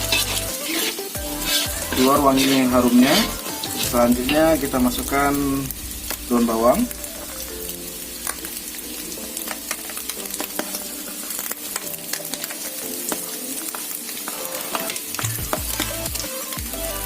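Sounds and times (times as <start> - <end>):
spatula scraping pan: 0.0 - 5.3
faint background music: 0.0 - 17.0
oil sizzling in frying pan: 0.0 - 17.0.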